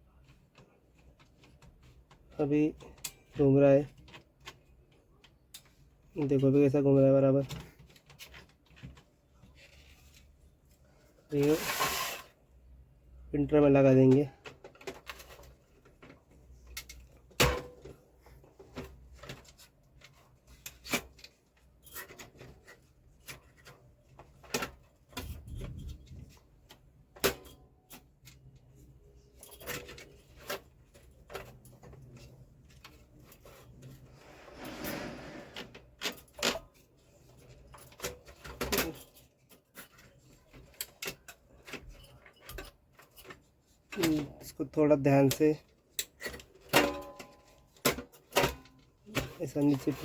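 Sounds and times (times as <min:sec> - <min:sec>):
plastic parts clicking and tapping: 0:00.1 - 0:10.4, 0:13.8 - 0:34.0, 0:35.6 - 0:50.0
plastic scraping rub: 0:33.8 - 0:35.9.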